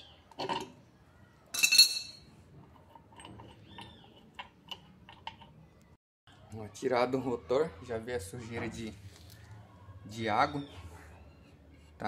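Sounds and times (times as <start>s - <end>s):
wrench clinking on metal: 1.5s - 2.3s.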